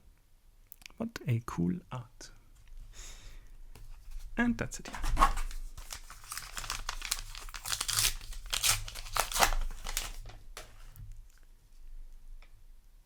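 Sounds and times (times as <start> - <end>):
wrapper crinkling and tearing: 4.9 - 11.0.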